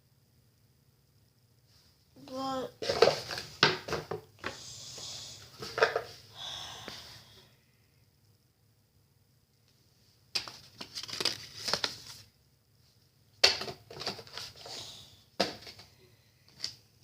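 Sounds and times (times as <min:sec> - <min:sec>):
packaging crinkling: 0:10.4 - 0:12.3.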